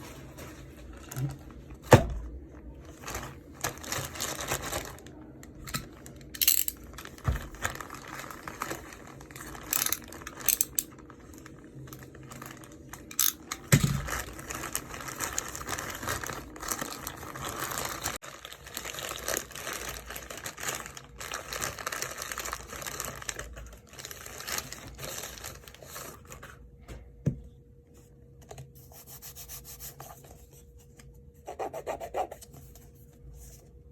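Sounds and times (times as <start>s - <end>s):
packaging crinkling and rustling: 2.7s - 26.6s.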